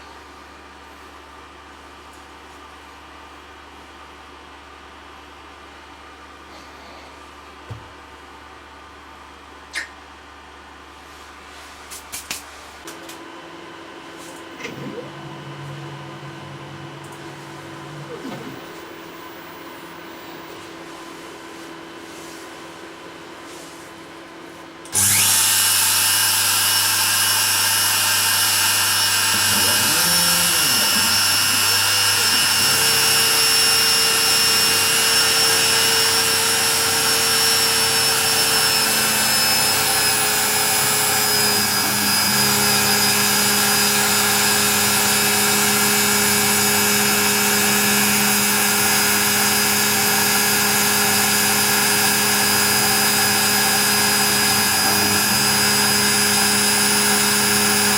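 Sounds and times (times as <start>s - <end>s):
router running with high whine: 13.7s - 20.8s, 24.9s - 57.9s.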